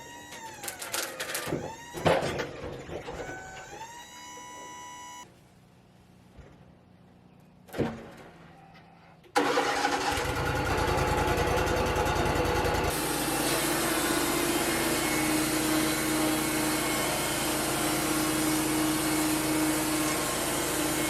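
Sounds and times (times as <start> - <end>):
sawmill engine running: 9.4 - 21.0.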